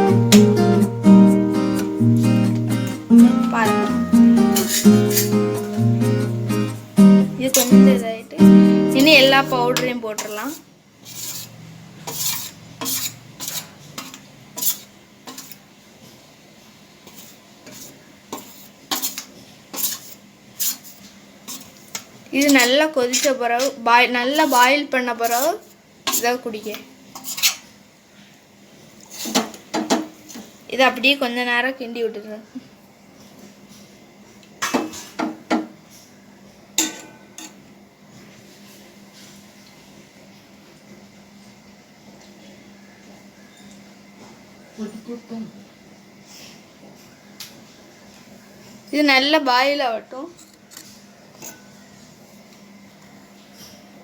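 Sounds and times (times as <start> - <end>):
spoon scraping cooking pot: 4.3 - 6.8, 9.0 - 15.6, 17.1 - 21.7, 22.4 - 27.6
spoon clinking against pot: 4.5 - 5.7, 7.5 - 7.9.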